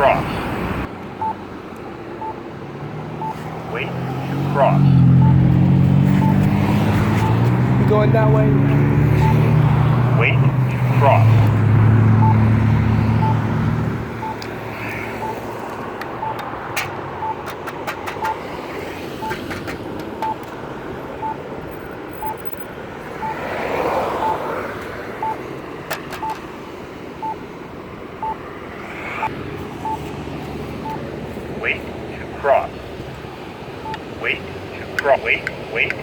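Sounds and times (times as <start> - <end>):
car passing: 0.0 - 36.0
steady traffic: 0.0 - 36.0
short beeps of pedestrian signal: 5.2 - 5.4, 6.2 - 6.4, 12.2 - 12.4, 14.2 - 14.4, 15.2 - 15.4, 17.2 - 17.4, 22.2 - 22.4, 23.2 - 23.4, 24.2 - 24.4
sharp clicks: 15.6 - 18.5.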